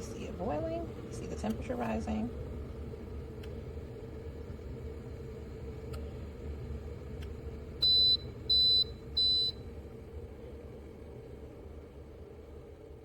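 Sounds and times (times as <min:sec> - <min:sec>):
water boiling rumble: 0:00.0 - 0:07.8, 0:09.8 - 0:13.0
electric kettle beeping: 0:07.8 - 0:09.7.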